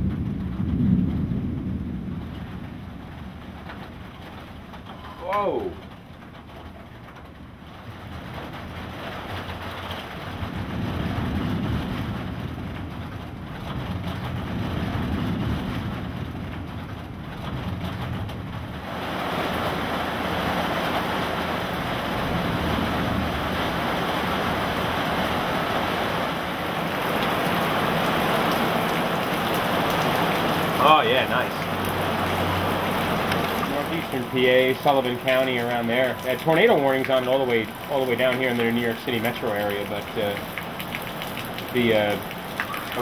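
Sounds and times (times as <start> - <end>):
strong wind: 0.0 - 4.4
heavy rain: 0.0 - 43.0
thunder rumbling: 0.0 - 43.0.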